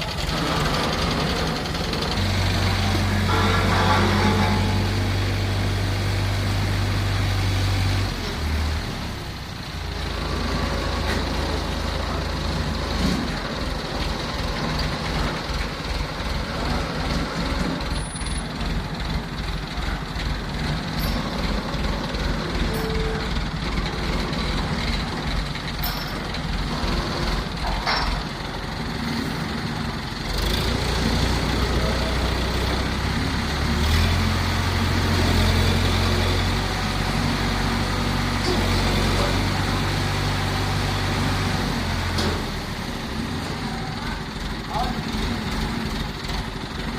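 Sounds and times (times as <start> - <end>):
metal clanks: 3.2 - 5.1, 25.7 - 26.5, 27.6 - 28.4.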